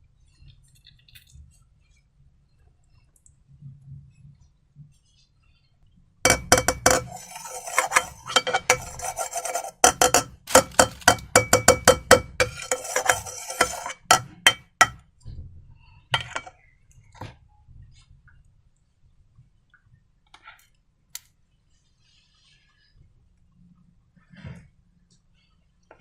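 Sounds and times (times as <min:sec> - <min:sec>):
slime rubbing: 0:06.8 - 0:11.2.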